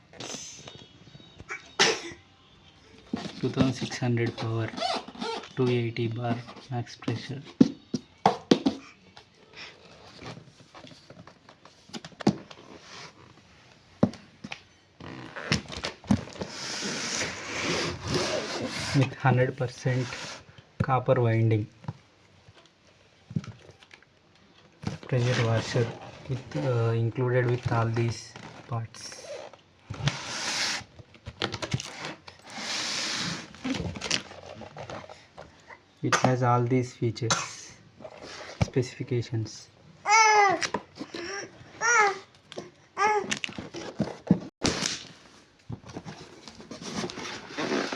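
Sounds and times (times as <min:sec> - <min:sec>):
knocks and thuds of packaging: 0:07.1 - 0:08.9, 0:12.0 - 0:12.5, 0:43.4 - 0:47.9
rubbing or scraping: 0:16.4 - 0:20.5, 0:25.1 - 0:26.8, 0:31.8 - 0:35.1, 0:38.0 - 0:38.7, 0:45.9 - 0:47.9.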